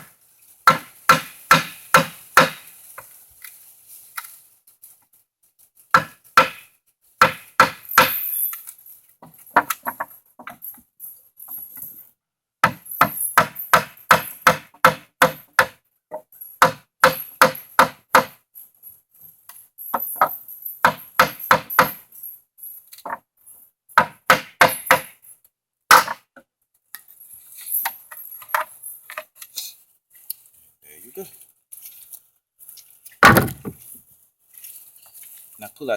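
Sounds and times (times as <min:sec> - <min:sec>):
rubber mallet striking wooden boards: 0:00.7 - 0:02.6, 0:06.0 - 0:08.2, 0:12.6 - 0:15.8, 0:24.0 - 0:25.2, 0:25.9 - 0:26.2, 0:33.2 - 0:33.8.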